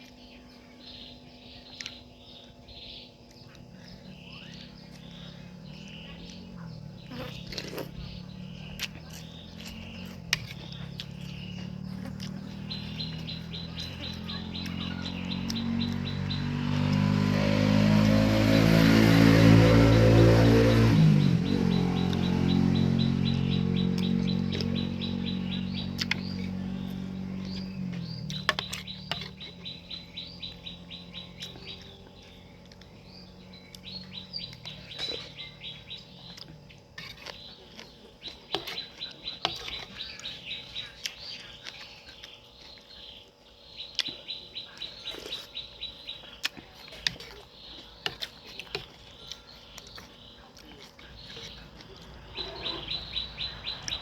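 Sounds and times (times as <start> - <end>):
passing vehicle: 4.2 - 36.2, 51.4 - 54.0
bird trilling: 43.7 - 54.0.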